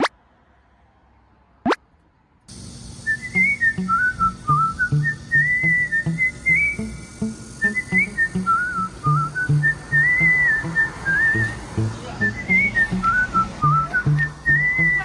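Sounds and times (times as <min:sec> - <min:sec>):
whistled melody over plucked bass: 0:03.0 - 0:15.0.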